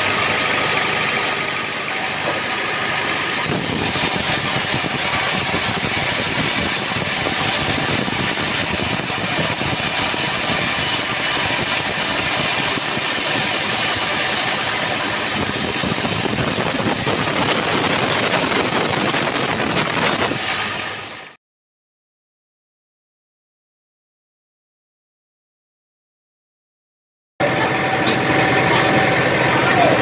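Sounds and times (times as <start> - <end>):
band sawmill sawing a log: 0.0 - 20.7.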